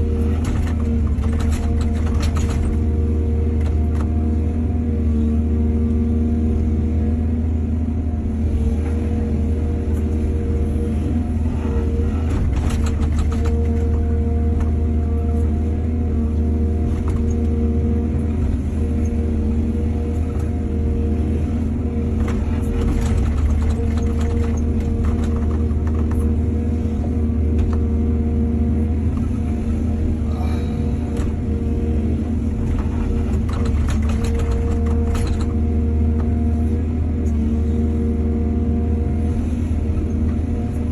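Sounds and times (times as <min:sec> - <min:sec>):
diesel engine rumbling: 0:00.0 - 0:40.9
machine clattering and knocks: 0:00.4 - 0:02.8, 0:12.3 - 0:13.9, 0:22.3 - 0:26.2, 0:32.7 - 0:35.6.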